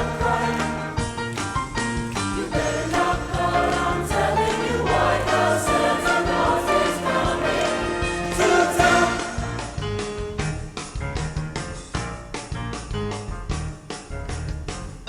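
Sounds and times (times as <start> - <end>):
choir singing in parts: 0.0 - 1.2, 2.2 - 9.8
instrumental accompaniment: 0.0 - 14.1.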